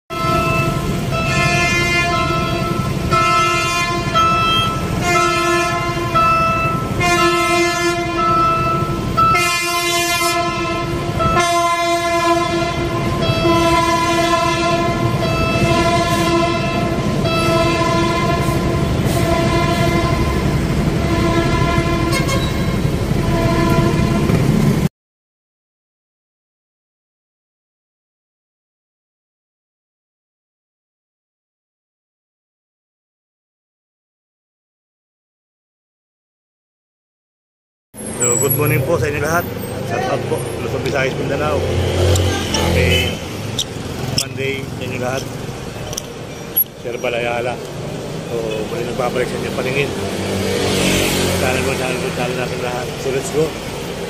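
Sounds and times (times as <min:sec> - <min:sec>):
train horn blasts: 0:00.1 - 0:24.9, 0:41.9 - 0:44.4
train rumbling: 0:00.1 - 0:24.9, 0:38.0 - 0:54.0.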